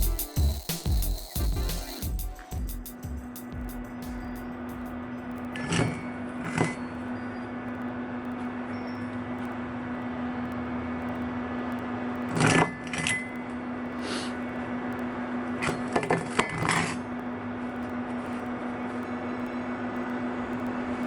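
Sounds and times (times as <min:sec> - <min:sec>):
steady machine hum: 0:00.0 - 0:06.4.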